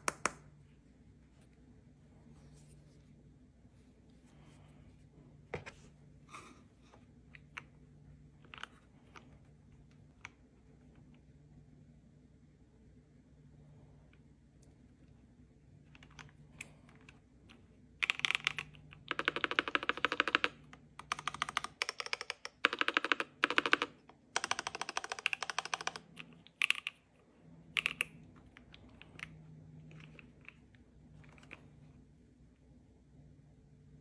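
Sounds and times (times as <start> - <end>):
typing on mechanical keyboard: 18.0 - 27.1, 27.7 - 31.6.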